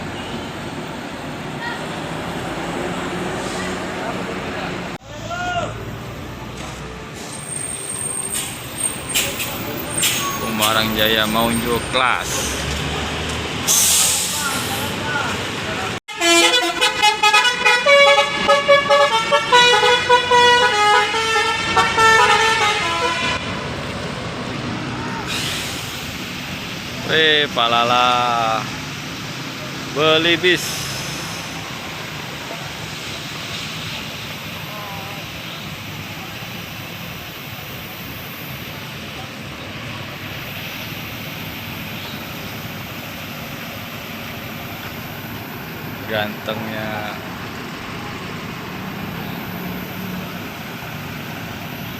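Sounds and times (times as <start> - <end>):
bus engine rumbling: 0.0 - 51.9
multi-tone bus horn melody: 16.1 - 23.5.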